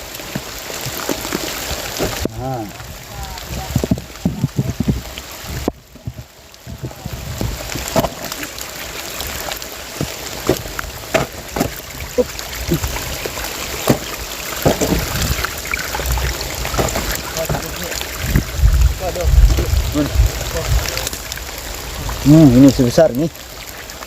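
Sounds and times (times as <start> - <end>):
heavy rain hissing: 0.0 - 24.0
scattered knocks and taps: 16.7 - 18.4.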